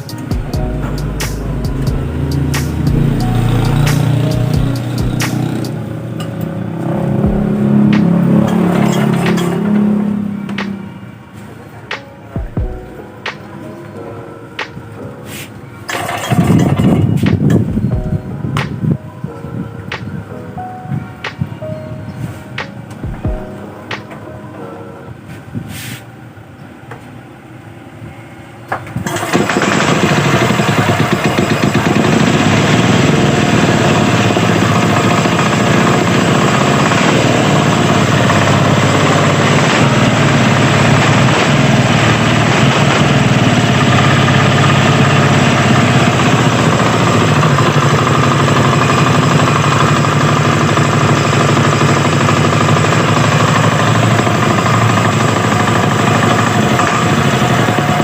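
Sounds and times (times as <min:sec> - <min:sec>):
air-cooled engine running loudly: 0:00.0 - 0:10.6, 0:29.0 - 0:58.0.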